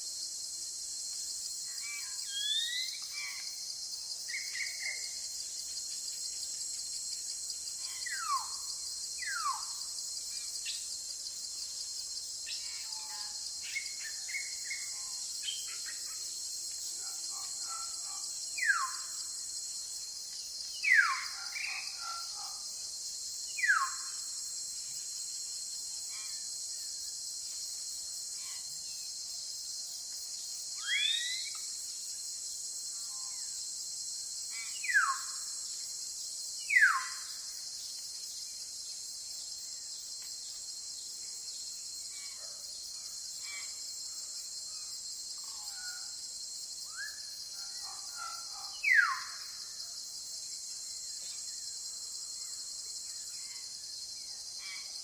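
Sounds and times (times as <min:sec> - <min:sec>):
insect drone: 0:00.0 - 0:55.0.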